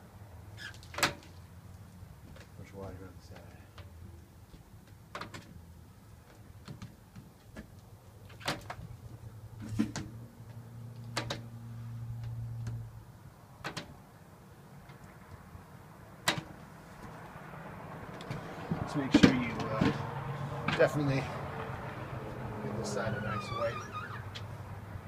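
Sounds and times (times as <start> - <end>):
squeegee squeaking on glass: 22.8 - 24.6.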